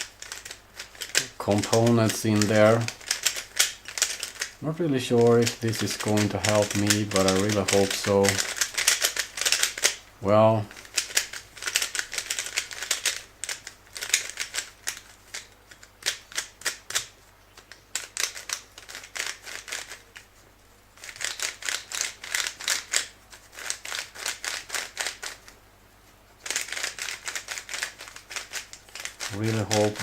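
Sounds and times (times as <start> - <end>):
puzzle cube clicking: 0.0 - 4.6, 5.2 - 10.0, 10.8 - 20.0, 26.4 - 30.0.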